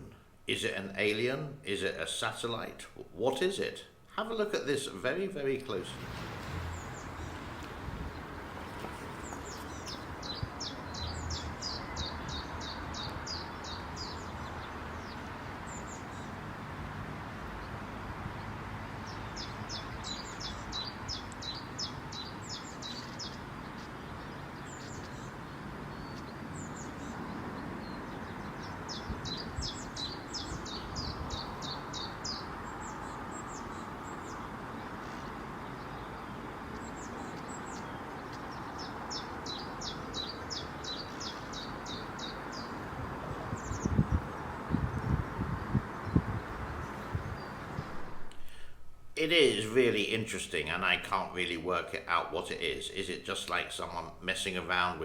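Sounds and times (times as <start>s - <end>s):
background hiss: 0.0s - 11.8s, 47.7s - 55.0s
songbird trilling: 5.9s - 14.4s, 36.8s - 42.8s.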